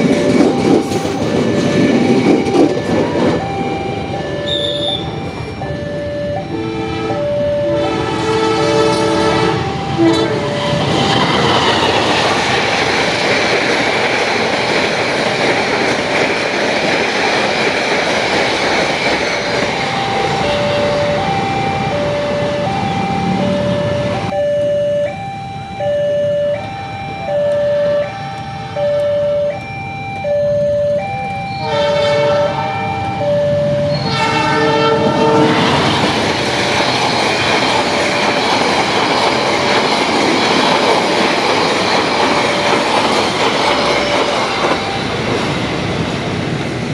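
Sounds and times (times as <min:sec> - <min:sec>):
crossing alarm two alternating tones: 0:00.0 - 0:12.1, 0:19.1 - 0:40.0
train wheels running past: 0:00.0 - 0:24.4, 0:26.5 - 0:46.9
train horn: 0:06.5 - 0:11.3, 0:31.5 - 0:36.2.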